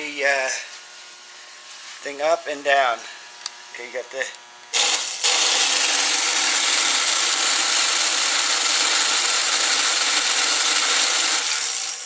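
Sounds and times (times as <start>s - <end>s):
hoist motor whirring grind: 4.2s - 12.0s.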